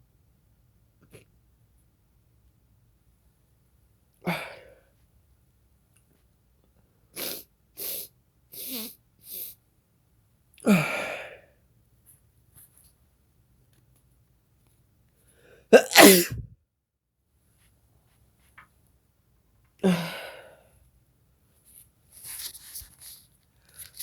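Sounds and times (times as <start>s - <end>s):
person sneezing: 15.8s - 16.5s.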